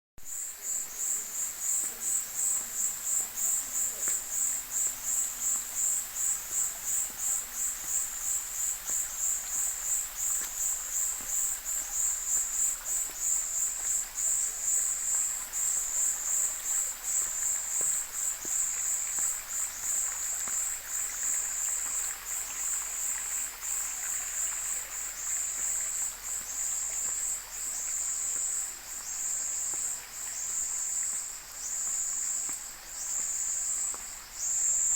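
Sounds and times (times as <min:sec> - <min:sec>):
insect chorus pulsing: 0:00.3 - 0:34.9.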